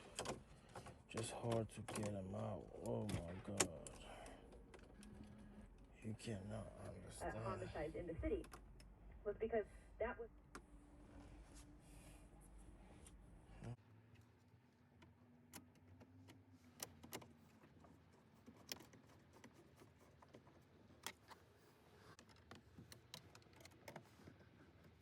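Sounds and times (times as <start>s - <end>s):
small parts and tools clicking: 0.0s - 6.0s, 22.1s - 25.0s.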